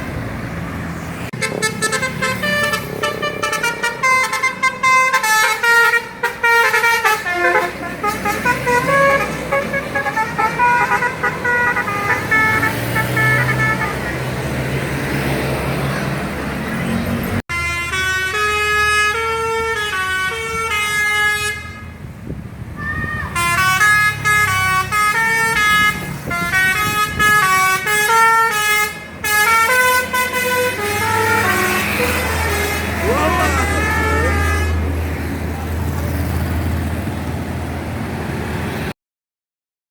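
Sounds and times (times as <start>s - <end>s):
road traffic noise: 0.0s - 39.0s
multi-tone bus horn tune: 1.3s - 14.4s, 17.5s - 22.1s, 23.3s - 35.1s.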